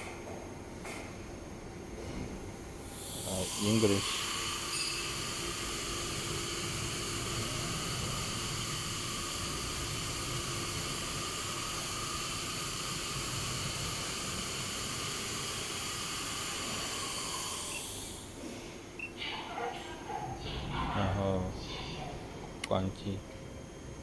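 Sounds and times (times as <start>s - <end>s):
steady hiss: 2.9s - 18.3s.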